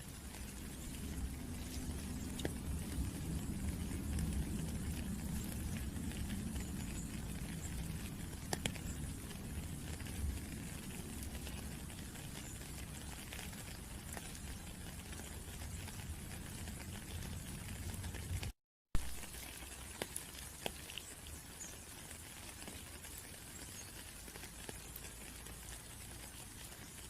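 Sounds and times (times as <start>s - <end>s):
steady rain: 0.0s - 27.0s
raindrop taps: 0.2s - 19.1s.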